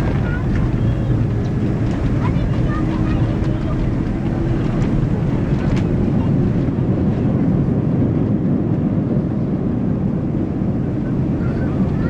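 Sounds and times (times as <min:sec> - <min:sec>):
airliner cabin engine rumble: 0:00.0 - 0:12.0.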